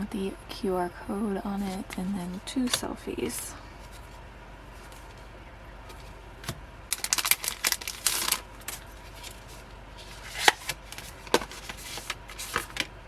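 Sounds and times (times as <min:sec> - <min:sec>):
paper and plastic rustling: 0:01.5 - 0:13.0.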